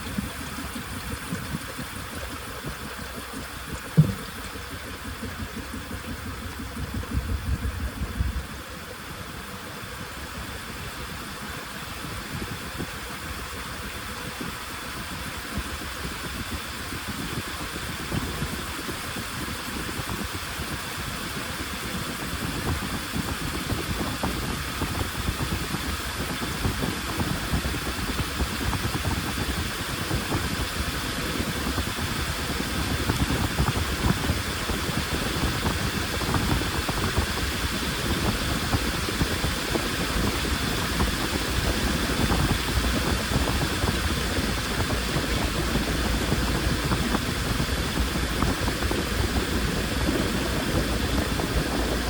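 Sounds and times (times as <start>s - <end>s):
washing machine running: 0.0s - 52.0s.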